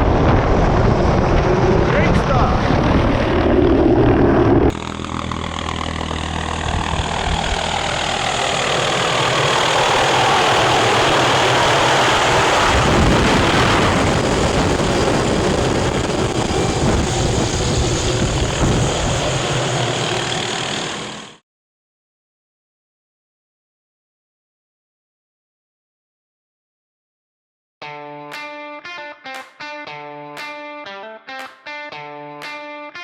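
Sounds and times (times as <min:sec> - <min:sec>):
engine running: 0:00.0 - 0:21.4.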